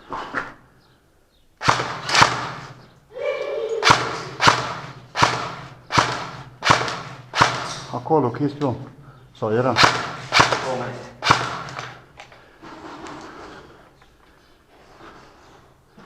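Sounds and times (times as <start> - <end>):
airsoft gun shots echoing: 1.6 - 2.8, 3.7 - 8.0, 9.7 - 12.0.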